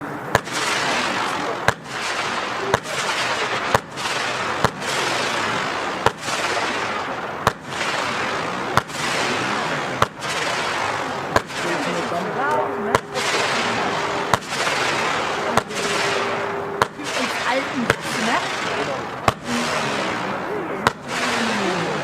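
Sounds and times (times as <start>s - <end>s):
firework bangs: 0.0s - 22.0s.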